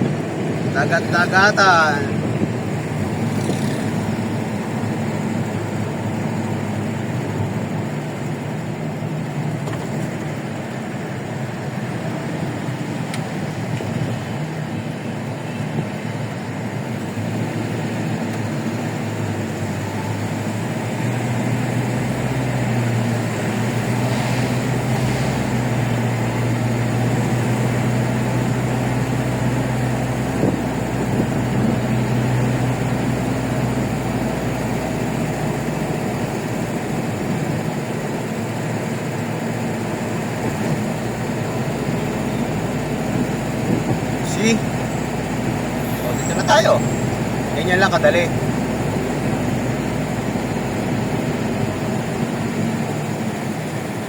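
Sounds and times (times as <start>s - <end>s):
vehicle engine and tyre noise: 0.0s - 54.0s.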